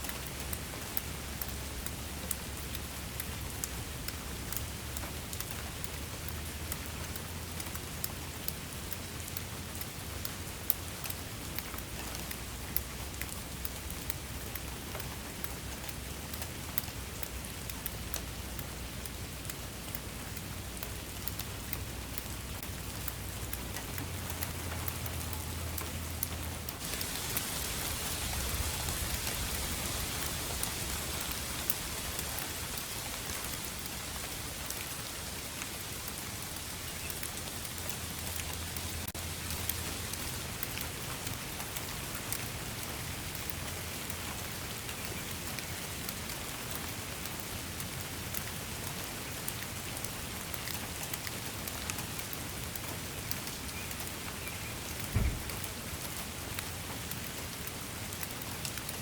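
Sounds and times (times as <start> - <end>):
steady rain falling: 0.0 - 59.0
low thump: 55.2 - 55.6.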